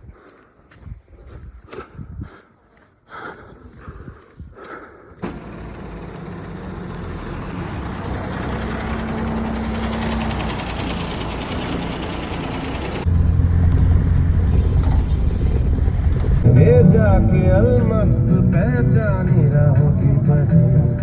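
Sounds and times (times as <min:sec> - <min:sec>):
vehicle engine and road noise: 0:05.2 - 0:21.0.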